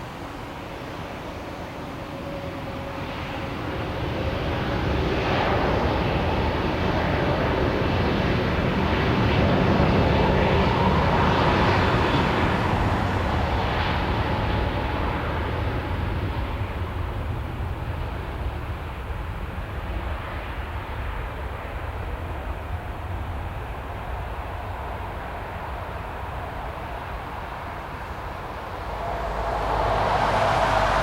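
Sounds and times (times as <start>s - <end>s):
airliner engine rumble: 0.0s - 20.6s, 21.2s - 31.0s
thin engine whine: 8.0s - 16.2s, 27.0s - 31.0s.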